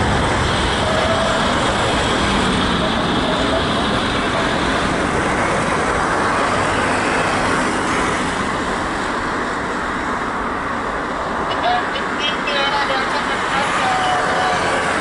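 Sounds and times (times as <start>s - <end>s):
jet taking off: 0.0s - 9.5s.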